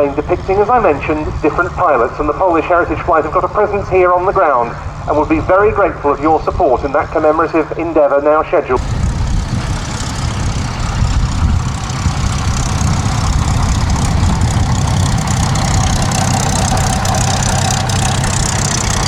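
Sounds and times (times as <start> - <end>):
aircraft engine running at low power: 0.0 - 19.0.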